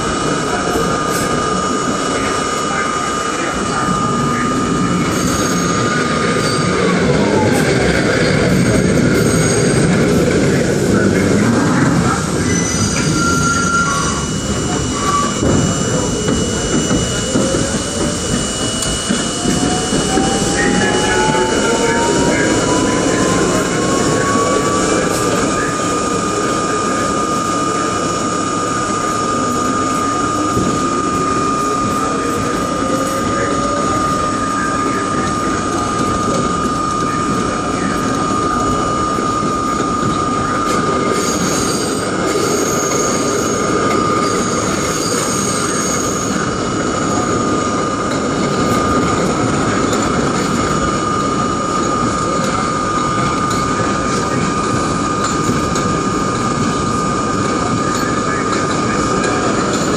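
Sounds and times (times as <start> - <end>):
lower whine rising: 0.0 - 41.2
high train whine: 0.0 - 59.9
train wheels rumbling on track: 0.0 - 59.9.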